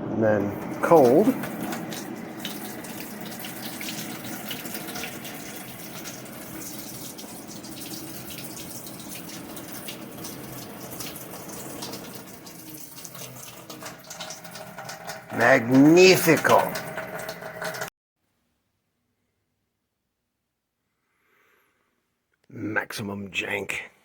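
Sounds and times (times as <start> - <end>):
water running from a tap: 0.4 - 17.9.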